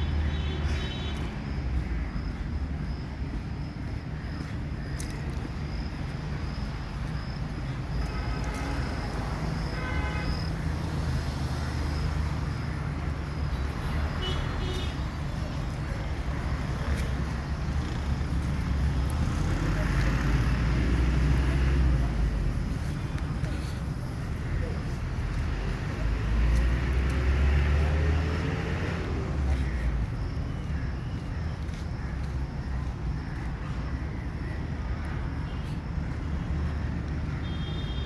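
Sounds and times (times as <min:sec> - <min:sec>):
road traffic: 0:00.0 - 0:38.0
vehicle passing close by: 0:25.6 - 0:29.6.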